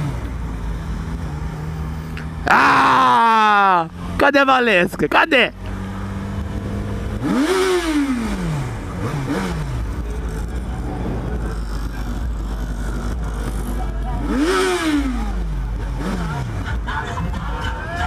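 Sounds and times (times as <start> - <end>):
motorcycle engine revving: 0.0 - 17.9
motorcycle engine idling: 5.6 - 18.0.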